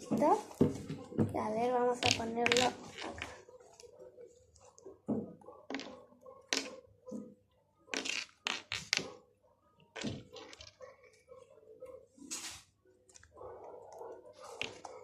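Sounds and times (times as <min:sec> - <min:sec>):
knocks and clacks on tabletop: 0:05.1 - 0:07.3.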